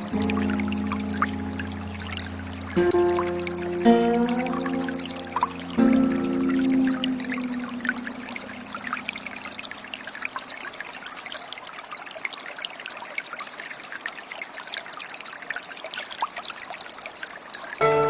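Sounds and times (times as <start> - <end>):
water trickling and babbling: 0.0 - 18.0.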